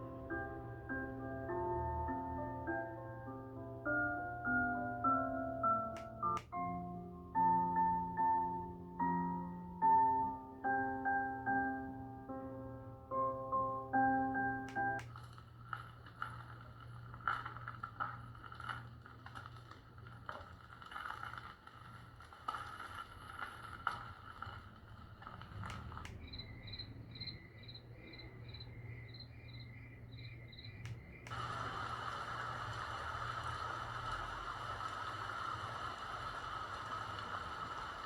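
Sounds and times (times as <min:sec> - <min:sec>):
insect-like clicks from speaker: 0:25.5 - 0:27.4, 0:30.1 - 0:31.4
high pulsing chirp: 0:26.2 - 0:31.2.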